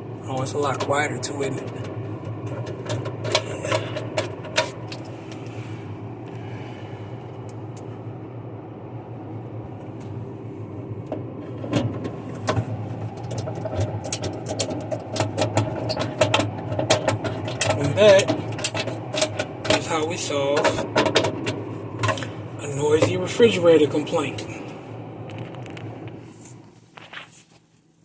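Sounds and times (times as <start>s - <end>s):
refrigerator humming: 0.0s - 28.0s
handling clicks and taps: 11.1s - 19.8s.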